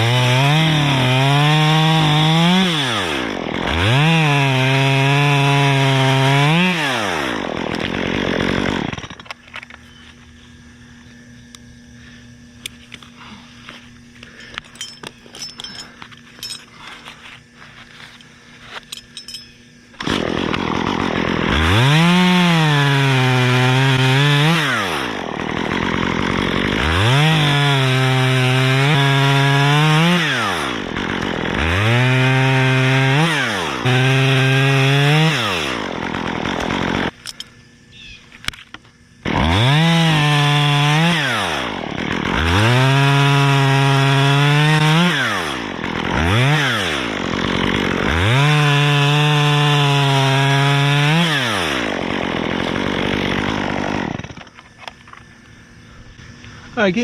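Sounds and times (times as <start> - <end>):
chainsaw revving and cutting: 0.0 - 10.0, 19.8 - 37.3, 39.1 - 57.0.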